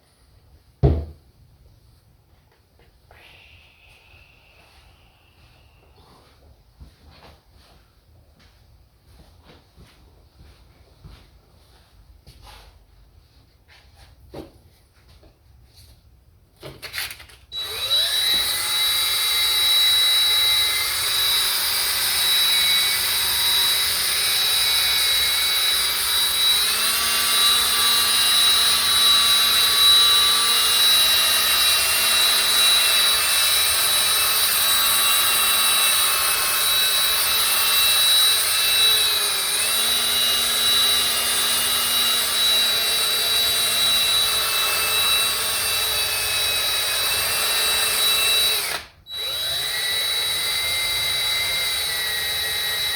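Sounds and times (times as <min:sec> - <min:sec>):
rotary power tool running: 0:17.5 - 0:52.9.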